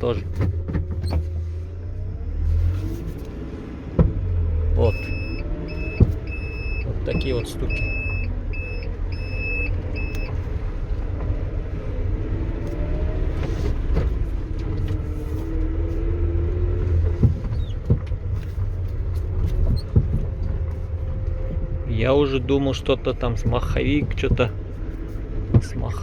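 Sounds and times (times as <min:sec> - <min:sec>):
van engine and road rumble: 0:00.0 - 0:26.0
electronic beep: 0:04.8 - 0:10.3.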